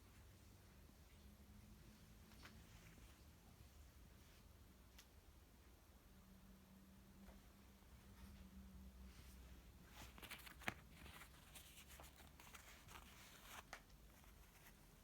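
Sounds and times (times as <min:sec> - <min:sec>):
faint low hum: 0:00.0 - 0:15.0
faint clicks and rustles: 0:07.2 - 0:15.0.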